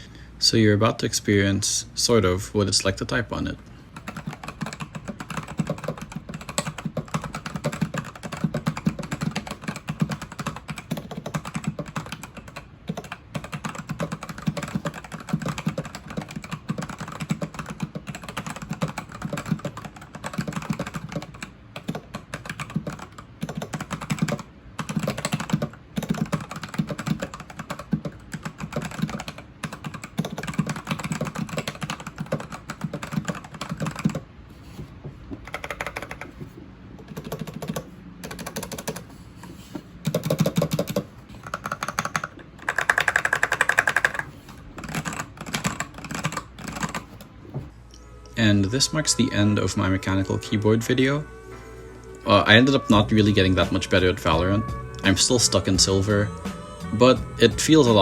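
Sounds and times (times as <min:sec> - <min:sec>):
mechanical keyboard typing: 0:03.9 - 0:34.3, 0:35.4 - 0:36.4, 0:37.0 - 0:39.1, 0:40.0 - 0:47.3.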